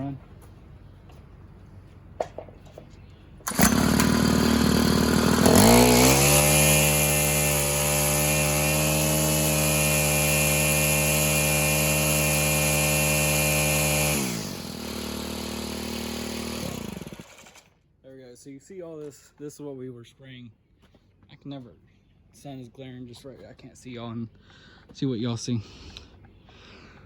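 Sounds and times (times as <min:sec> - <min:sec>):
trimmer engine revving: 0:03.4 - 0:17.7.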